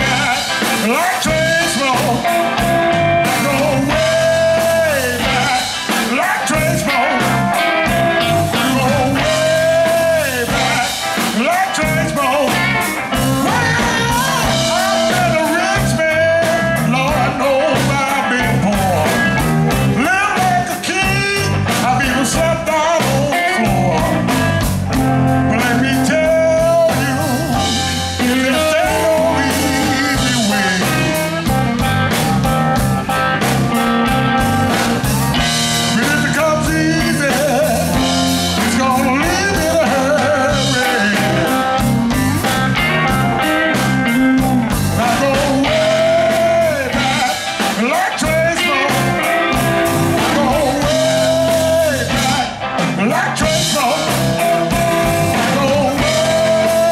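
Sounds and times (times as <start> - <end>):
person singing: 0.0 - 31.9, 35.4 - 56.9
guitar: 0.0 - 56.9
live blues band: 0.0 - 56.9.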